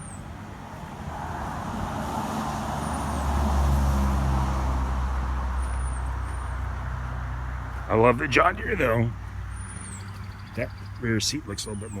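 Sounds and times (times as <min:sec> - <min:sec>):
low engine hum: 0:00.0 - 0:12.0
vehicle engine and tyre noise: 0:00.0 - 0:12.0.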